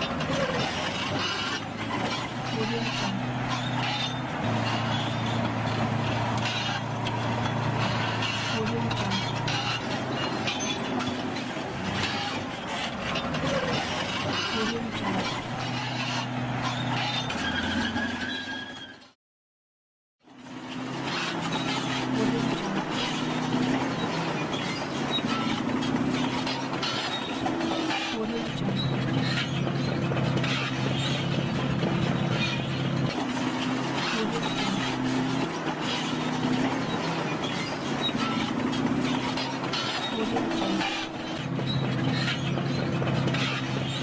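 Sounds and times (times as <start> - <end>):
bulldozer diesel engine: 0.0 - 19.2, 20.3 - 44.0
high squeaks: 12.0 - 19.1.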